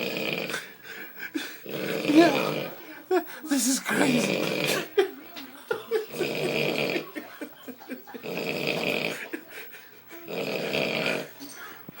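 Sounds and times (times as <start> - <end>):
person snoring loudly: 0.0 - 0.7, 1.6 - 2.8, 3.6 - 4.9, 6.1 - 7.2, 8.2 - 9.3, 10.3 - 11.4.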